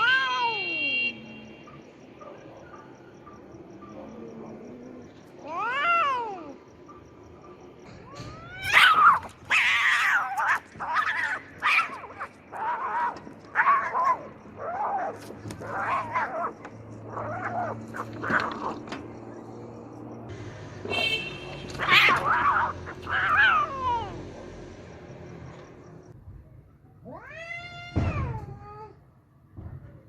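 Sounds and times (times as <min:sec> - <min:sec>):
cats yowling in a fight: 0:00.0 - 0:00.6, 0:05.3 - 0:06.7, 0:08.0 - 0:18.9, 0:21.7 - 0:24.3, 0:27.0 - 0:29.0.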